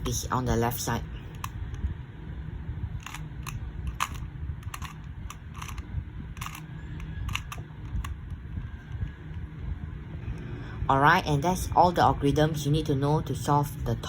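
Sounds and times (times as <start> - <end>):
speed cube clicking: 3.0 - 5.8, 6.4 - 8.4.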